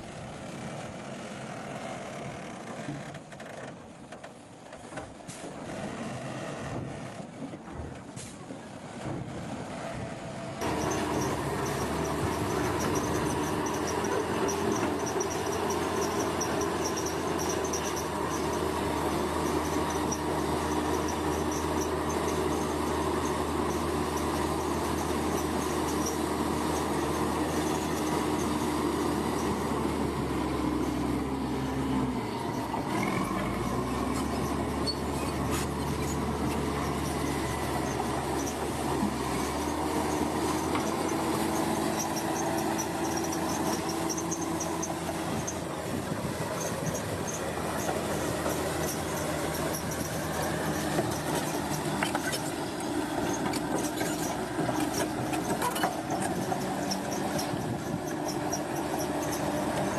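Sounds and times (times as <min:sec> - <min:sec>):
bulldozer diesel engine: 0:00.0 - 0:59.9
steel tracks squealing and clanking: 0:10.6 - 0:59.9.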